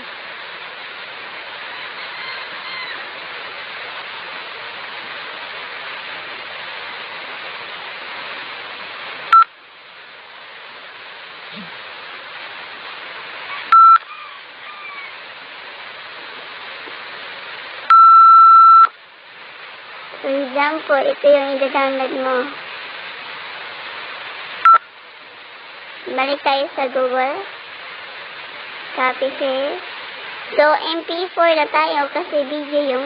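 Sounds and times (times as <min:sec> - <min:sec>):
steady hiss: 0:00.0 - 0:33.0
electronic beeps: 0:13.7 - 0:14.0, 0:17.9 - 0:18.9.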